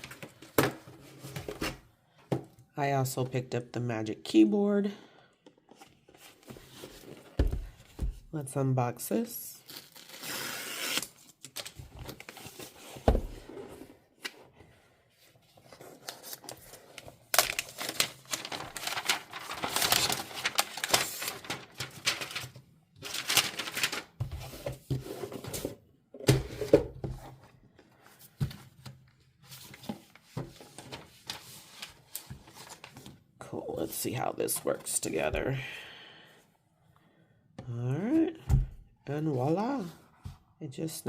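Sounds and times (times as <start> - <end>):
packaging tearing and crinkling: 9.6 - 12.5, 17.3 - 24.1.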